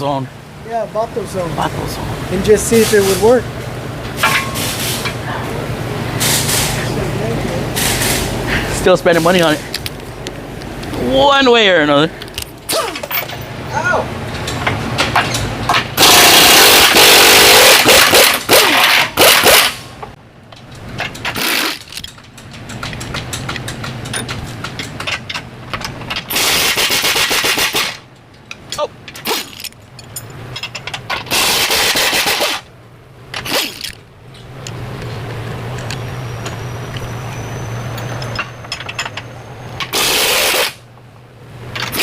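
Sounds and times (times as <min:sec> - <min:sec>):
metal clinks from tools: 0:13.0 - 0:13.5, 0:29.6 - 0:31.0
power impact tool hammering: 0:16.0 - 0:19.8, 0:31.2 - 0:32.6.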